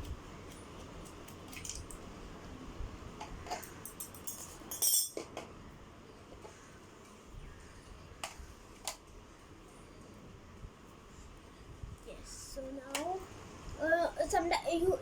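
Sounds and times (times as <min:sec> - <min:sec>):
small parts clicking and clinking: 0:03.5 - 0:05.3.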